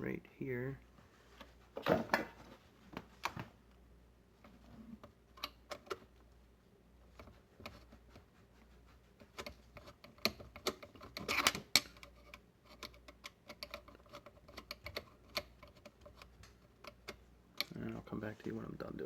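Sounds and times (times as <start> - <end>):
small metal clicks and taps: 9.4 - 17.8.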